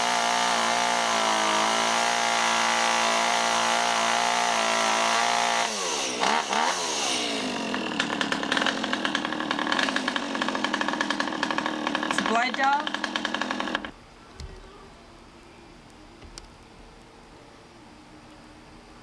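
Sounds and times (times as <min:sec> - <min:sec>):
chainsaw running: 0:00.0 - 0:14.0.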